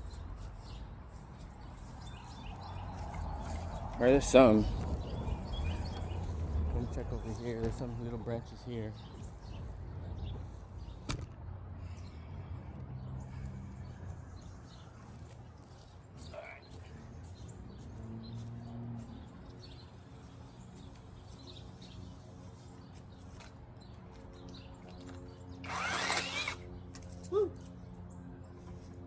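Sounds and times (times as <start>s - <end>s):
short noisy burst: 25.6s - 26.6s.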